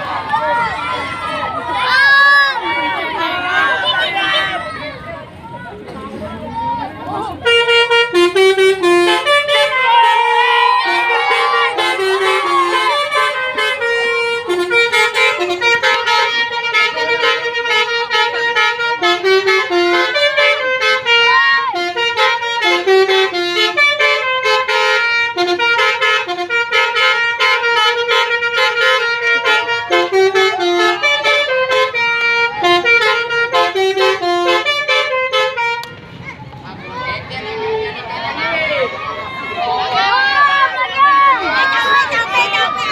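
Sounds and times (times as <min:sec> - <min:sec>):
multi-tone bus horn melody: 0:07.3 - 0:36.2.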